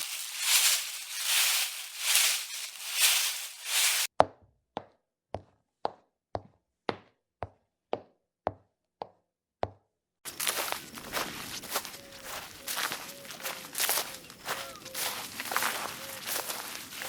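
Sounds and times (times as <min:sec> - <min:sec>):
footsteps on loose surface: 0:00.0 - 0:04.1, 0:10.3 - 0:17.0.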